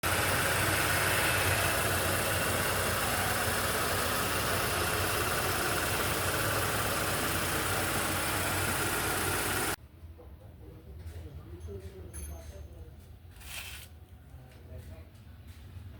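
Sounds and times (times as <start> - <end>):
car engine idling: 0.0 - 9.8.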